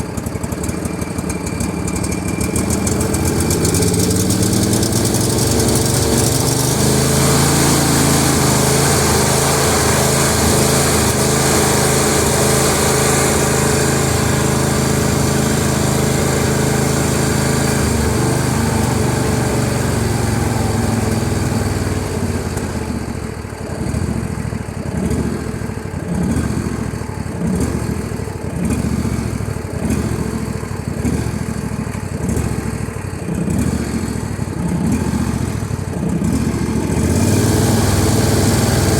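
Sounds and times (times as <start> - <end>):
lawn tractor engine running: 0.0 - 38.9.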